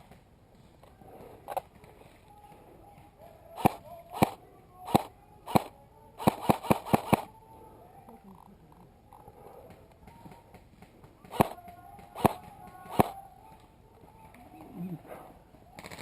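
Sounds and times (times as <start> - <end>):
airsoft gun shots: 3.6 - 7.3, 11.3 - 11.6, 12.2 - 13.2.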